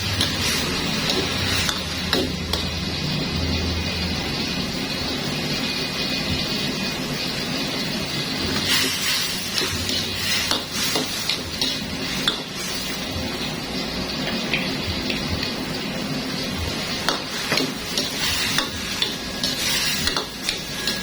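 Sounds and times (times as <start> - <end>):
food sizzling in frying pan: 0.0 - 21.0
spatula scraping a pan: 8.4 - 13.1, 16.8 - 21.0.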